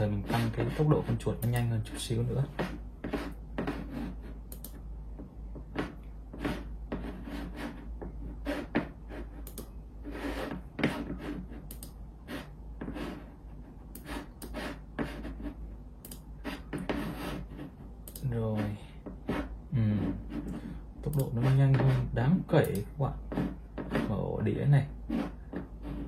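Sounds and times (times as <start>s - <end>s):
mouse scraping on desk: 0.0s - 4.4s, 5.6s - 15.6s, 16.4s - 26.0s
steady low hum: 0.0s - 26.0s
computer mouse clicks: 1.3s - 1.7s, 4.5s - 4.8s, 9.4s - 9.7s, 11.6s - 12.0s, 16.0s - 16.9s, 18.0s - 18.3s, 21.0s - 21.4s.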